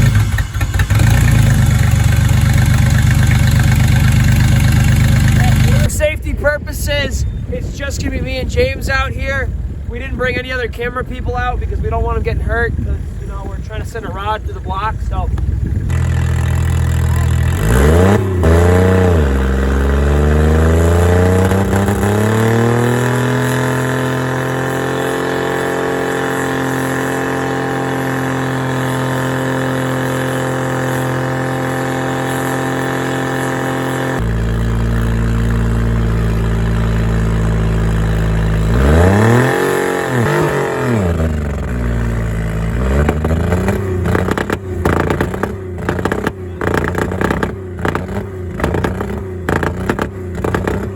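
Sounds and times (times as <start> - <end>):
car engine revving hard: 15.9 - 50.9.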